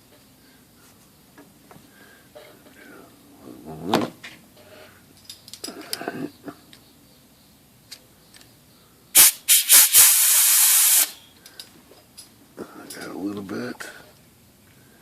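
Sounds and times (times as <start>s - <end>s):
compressed air blow gun hiss: 9.2s - 11.2s.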